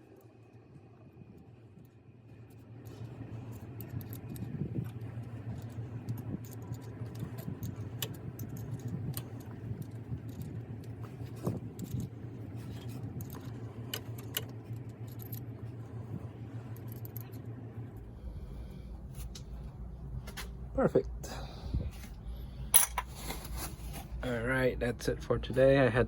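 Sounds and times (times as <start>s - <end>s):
steady low hum: 0.0s - 26.0s
metal tools clinking and scraping: 22.7s - 24.0s.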